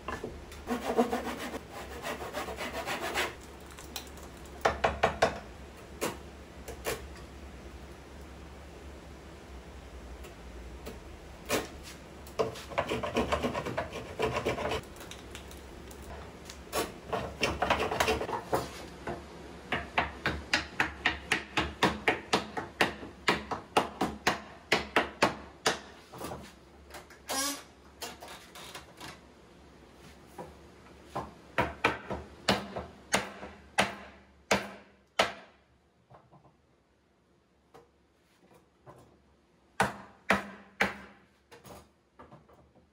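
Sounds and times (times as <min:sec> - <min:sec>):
hand saw cutting wood: 0:00.7 - 0:03.4, 0:12.4 - 0:14.8.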